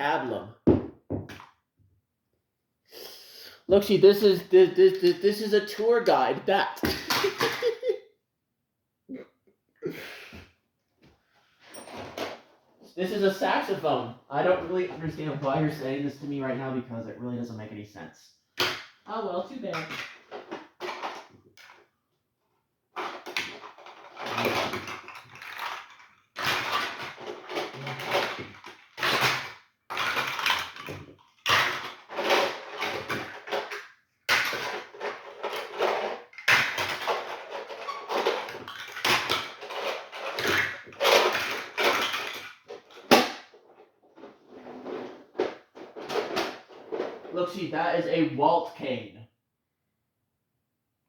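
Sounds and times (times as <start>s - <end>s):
hard objects clattering and rattling: 6.8s - 8.0s, 19.6s - 21.9s, 23.0s - 47.4s.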